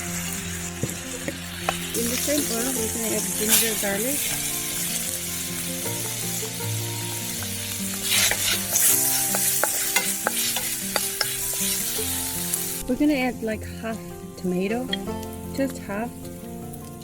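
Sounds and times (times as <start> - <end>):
food sizzling in oil: 0.0 - 17.0
spatula tapping pan: 0.8 - 2.6, 7.3 - 11.8.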